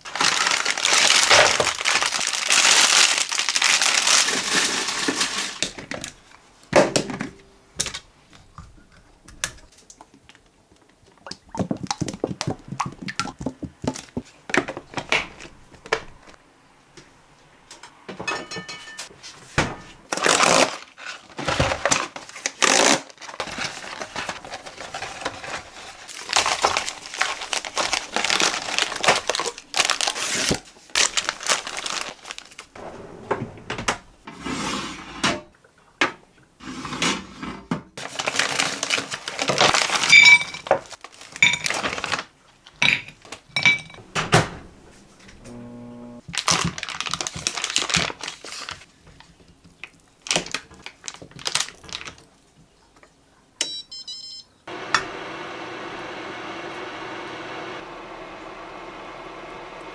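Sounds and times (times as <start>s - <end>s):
plastic packaging crinkling: 0.0s - 6.4s, 20.1s - 32.8s, 38.0s - 43.5s, 46.2s - 52.4s.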